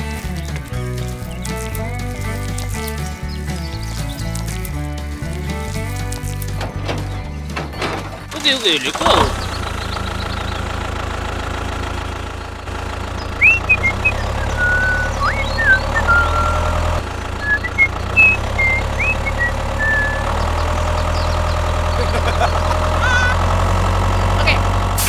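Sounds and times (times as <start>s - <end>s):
small motor humming and whining: 12.7s - 25.0s
short high chirps: 13.4s - 16.8s, 17.4s - 20.8s.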